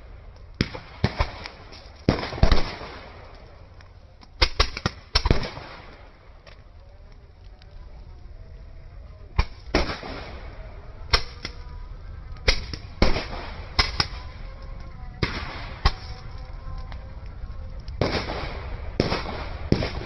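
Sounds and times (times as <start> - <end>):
firecrackers banging: 0.0 - 6.7, 9.2 - 20.0.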